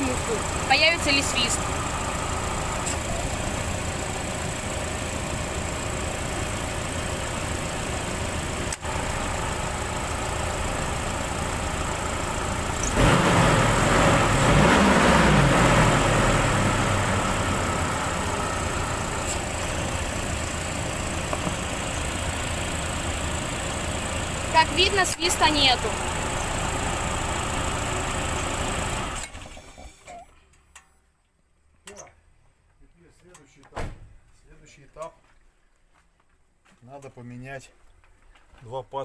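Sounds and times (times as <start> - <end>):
engine revving: 0.0 - 30.0
engine idling: 0.0 - 30.5
compressor clutch switching: 8.2 - 9.0, 12.6 - 13.0.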